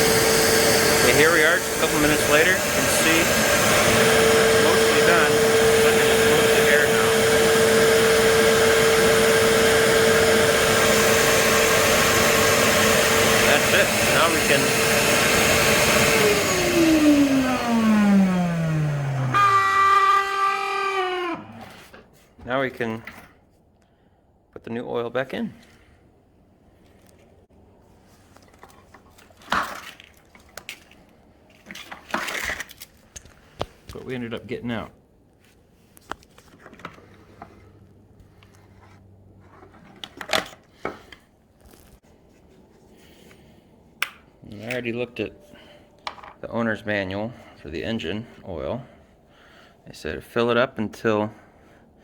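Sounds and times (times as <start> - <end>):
shop vac motor whining: 0.0 - 22.0.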